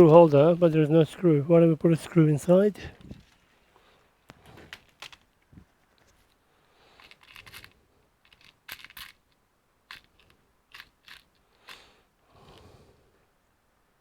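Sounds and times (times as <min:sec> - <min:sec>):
small screws and plastic clicking: 0:04.3 - 0:05.4, 0:07.0 - 0:11.9.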